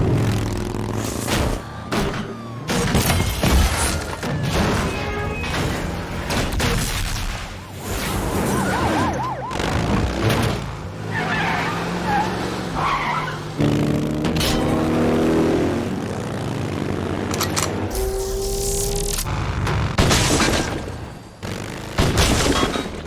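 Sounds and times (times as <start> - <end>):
police siren yelping: 1.6 - 5.4, 7.6 - 10.2.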